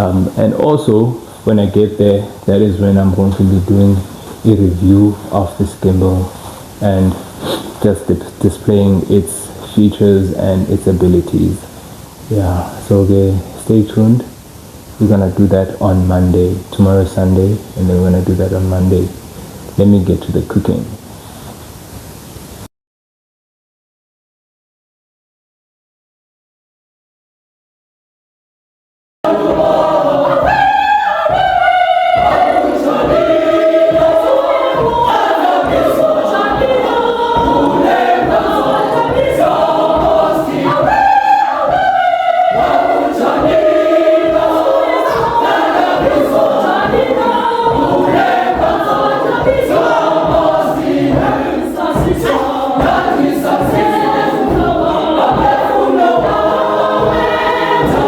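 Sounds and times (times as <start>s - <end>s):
choir singing gospel music: 29.2s - 58.0s.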